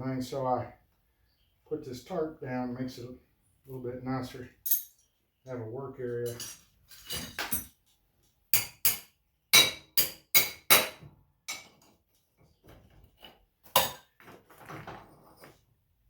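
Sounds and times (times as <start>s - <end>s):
hammer striking metal: 8.6s - 11.7s.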